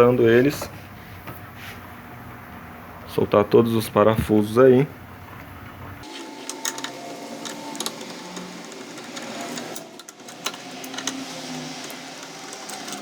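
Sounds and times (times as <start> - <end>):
power tool whirring and clicking: 6.0 - 13.0.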